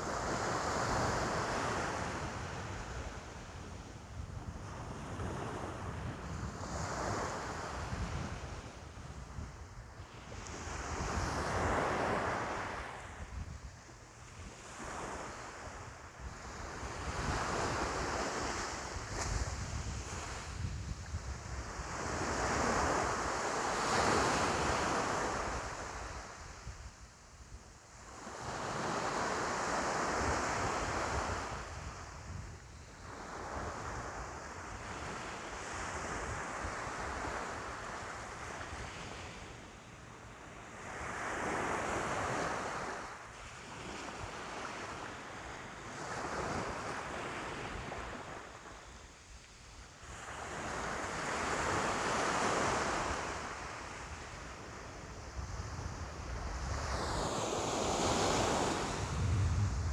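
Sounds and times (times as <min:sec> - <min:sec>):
wind rumble on microphone: 0:00.0 - 0:27.7, 0:29.9 - 0:39.7, 0:54.0 - 0:59.9.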